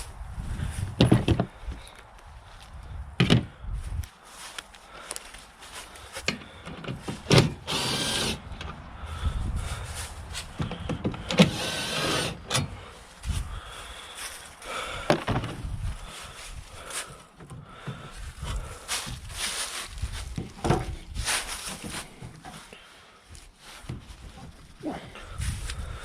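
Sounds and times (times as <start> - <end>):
knocks and clicks of parts: 1.0 - 1.5, 3.2 - 3.5, 6.2 - 8.8, 10.6 - 12.8, 15.1 - 15.6
power drill running: 7.4 - 8.6, 11.4 - 12.6.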